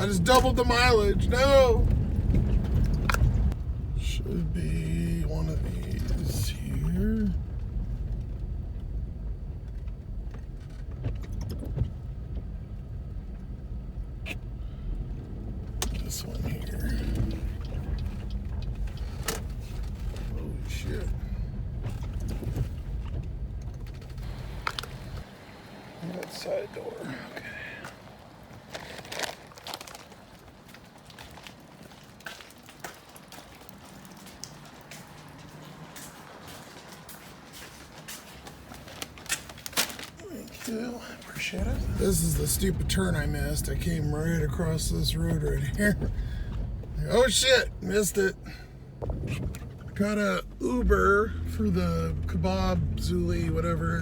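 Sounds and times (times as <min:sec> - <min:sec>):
car road and engine rumble: 0:00.0 - 0:54.0
rain dripping and tapping: 0:00.0 - 0:54.0
faint low hum: 0:40.2 - 0:54.0.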